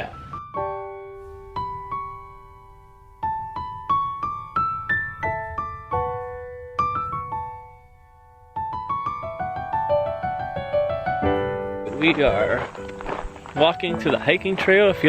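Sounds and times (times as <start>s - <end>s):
piano notes: 0.0s - 15.0s.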